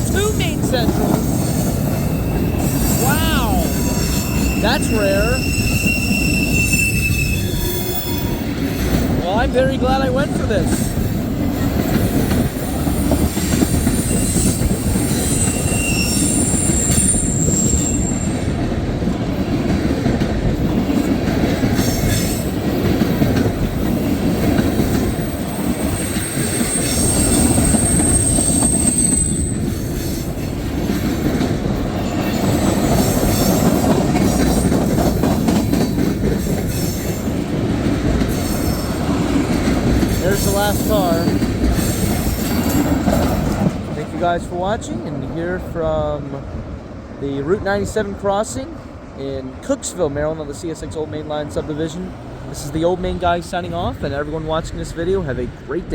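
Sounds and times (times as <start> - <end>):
high wheel squeals: 0.0 - 9.1, 10.7 - 18.6, 25.1 - 30.4, 38.2 - 39.4
train wheels rumbling on rails: 0.0 - 55.9.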